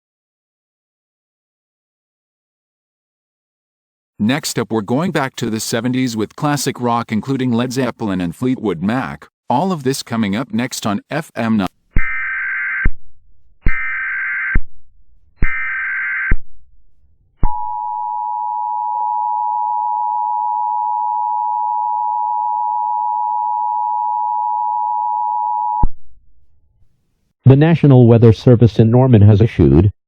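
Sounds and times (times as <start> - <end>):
digital data screech: 13.7 - 14.6, 15.4 - 16.4.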